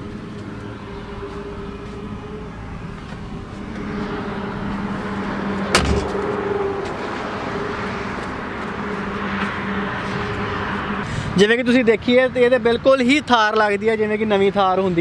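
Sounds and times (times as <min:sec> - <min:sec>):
vehicle engine humming: 0:00.0 - 0:13.4
sharp knock: 0:05.7 - 0:06.2.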